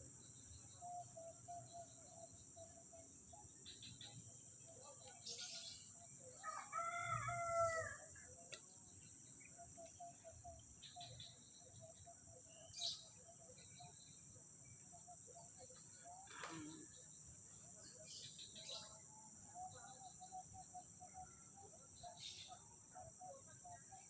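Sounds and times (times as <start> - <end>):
faint bird chirps: 0.0 - 24.0
rooster crowing: 6.4 - 8.1.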